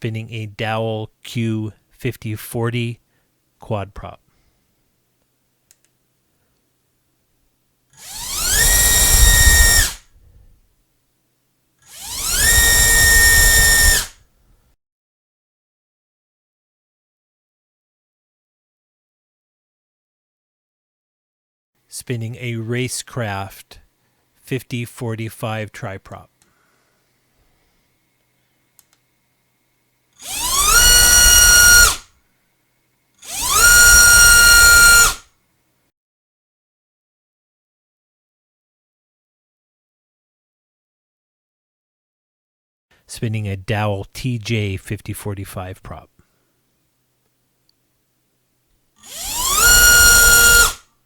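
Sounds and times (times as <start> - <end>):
electric motor and propeller whine: 8.0 - 10.0, 11.9 - 14.1, 30.2 - 32.0, 33.3 - 35.2, 49.1 - 50.8.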